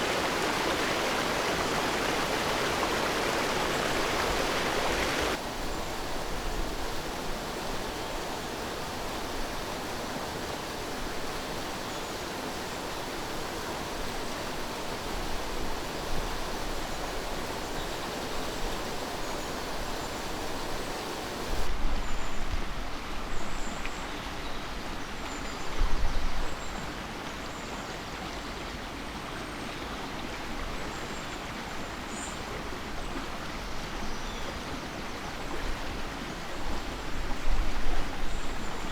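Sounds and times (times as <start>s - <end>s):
stream rushing: 0.0s - 23.6s.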